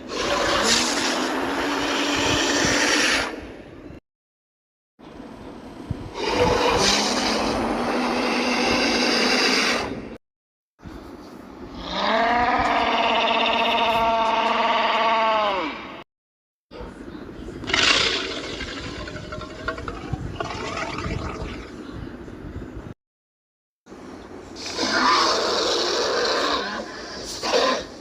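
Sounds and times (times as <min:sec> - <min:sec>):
harsh dinosaur roars: 0:00.0 - 0:03.3, 0:06.2 - 0:10.0, 0:11.8 - 0:16.0, 0:24.7 - 0:28.0.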